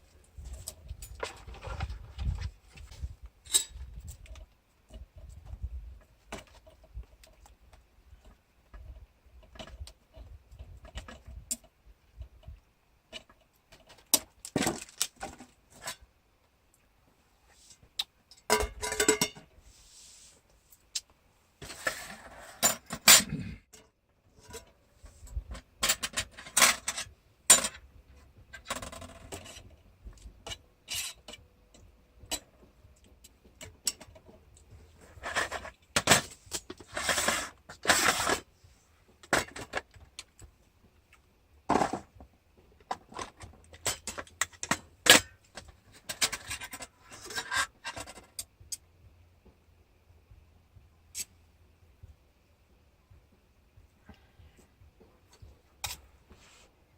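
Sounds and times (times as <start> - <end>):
metal camping gear clinking: 0.4 - 2.0, 3.4 - 4.5, 18.3 - 19.5, 21.6 - 27.9, 28.5 - 38.4, 42.8 - 48.8.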